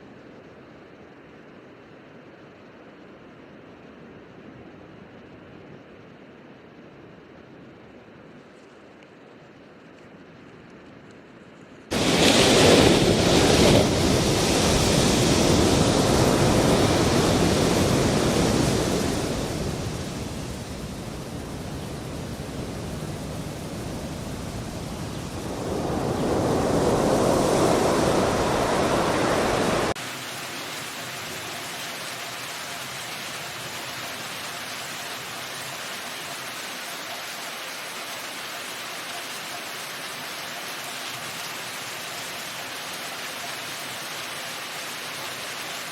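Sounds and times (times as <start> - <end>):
rain hiss: 11.9 - 45.9
rushing water: 11.9 - 45.9.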